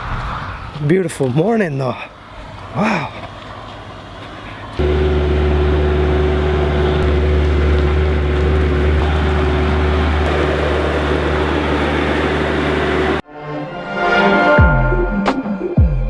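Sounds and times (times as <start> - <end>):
machine engine humming: 4.7 - 13.2
steady whine: 4.8 - 13.2.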